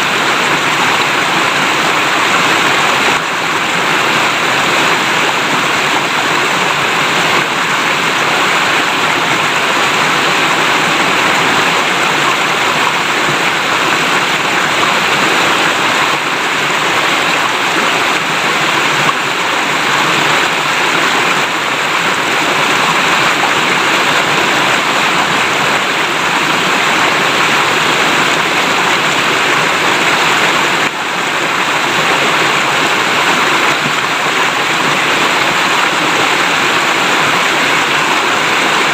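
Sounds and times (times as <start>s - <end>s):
river water babbling: 0.0s - 38.9s.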